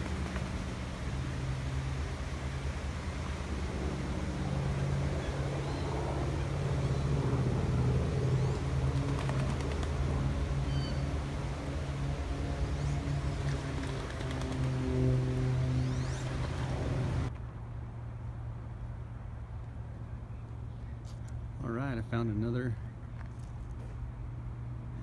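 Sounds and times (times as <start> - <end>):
low engine drone: 0.0 - 20.4
faint bird chirps: 10.7 - 11.0.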